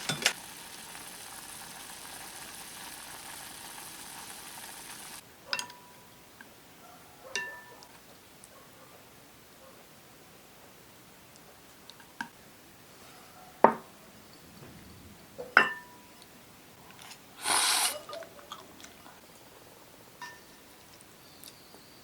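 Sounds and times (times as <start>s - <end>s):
tableware clinking: 0.0s - 0.3s, 15.6s - 16.1s
brief hiss: 17.4s - 18.1s.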